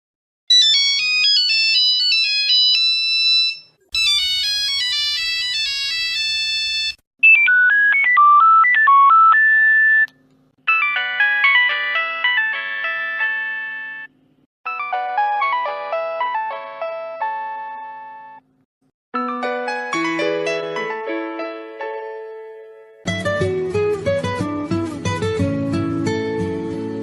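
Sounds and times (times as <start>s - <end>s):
mobile phone ringtone melodies: 0.5s - 10.1s, 10.7s - 14.1s, 14.7s - 18.4s.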